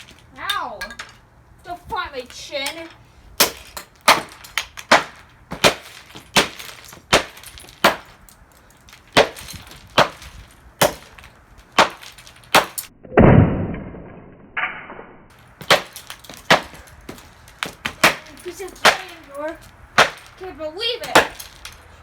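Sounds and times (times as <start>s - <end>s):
hammer smashing plastic: 3.4s - 8.2s, 8.8s - 12.9s, 15.5s - 21.8s.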